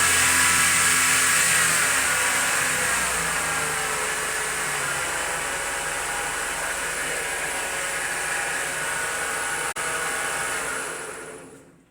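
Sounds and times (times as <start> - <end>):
belt grinder whirring: 0.0 - 11.7.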